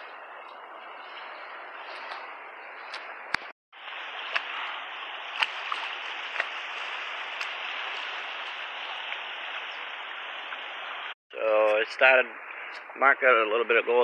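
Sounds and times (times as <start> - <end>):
river water flowing: 0.0 - 14.0.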